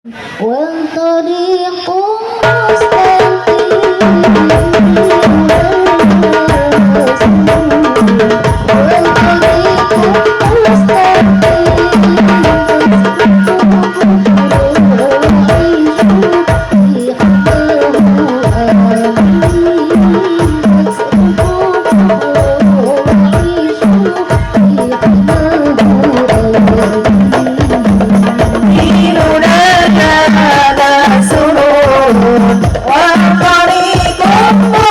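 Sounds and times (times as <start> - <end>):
person singing: 0.1 - 34.9
frame drums: 2.4 - 34.9
wavering melody line: 3.5 - 17.6
deep bass drum beat: 4.0 - 34.9.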